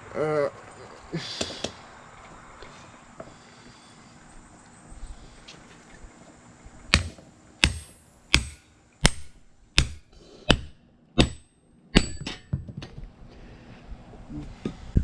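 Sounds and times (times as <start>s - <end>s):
hammer striking steel on anvil: 6.9s - 12.5s.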